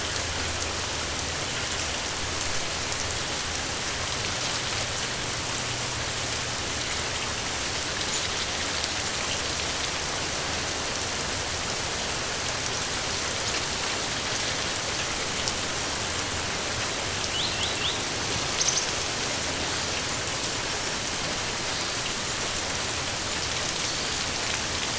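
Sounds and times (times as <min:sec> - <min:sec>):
steady rain falling: 0:00.0 - 0:24.9
high bird chirps: 0:17.3 - 0:19.2.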